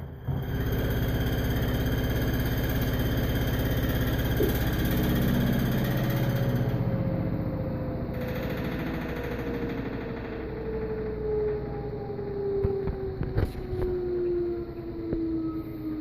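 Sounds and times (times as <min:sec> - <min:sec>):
washing machine hum: 0:00.0 - 0:07.4.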